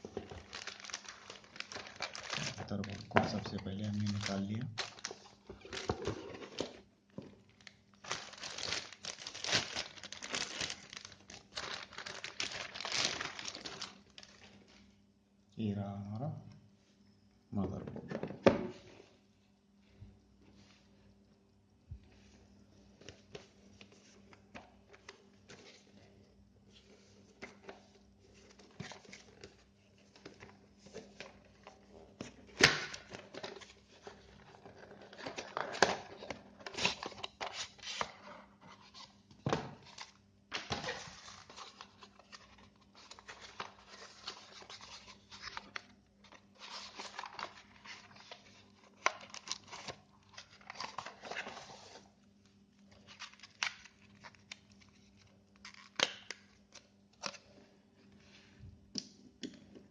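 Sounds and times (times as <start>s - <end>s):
packaging rustling and crinkling: 0.0s - 14.8s, 26.8s - 52.1s, 52.8s - 57.5s
faint electrical hum: 0.0s - 59.9s.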